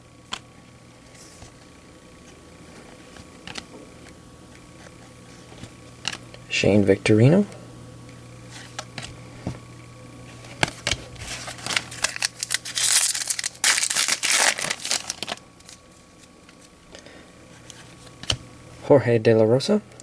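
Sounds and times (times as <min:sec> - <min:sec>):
foil wrapper crinkling: 0:10.6 - 0:16.8
cards tapping and clicking: 0:17.6 - 0:18.4.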